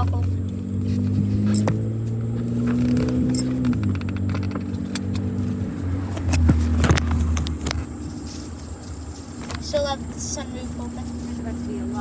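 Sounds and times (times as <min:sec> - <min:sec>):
car engine idling: 0:00.0 - 0:12.0
small clicks and knocks: 0:02.6 - 0:05.4.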